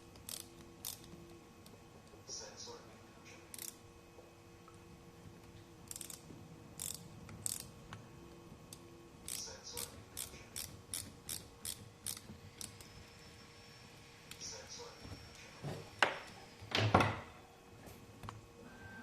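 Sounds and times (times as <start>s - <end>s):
small tools clicking and snipping: 5.8s - 6.2s, 6.8s - 7.7s, 8.7s - 12.9s.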